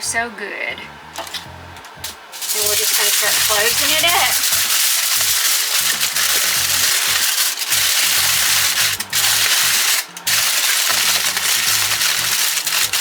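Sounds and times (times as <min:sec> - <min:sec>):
background music: 0:00.0 - 0:13.0
aluminium foil crinkling: 0:02.0 - 0:13.0.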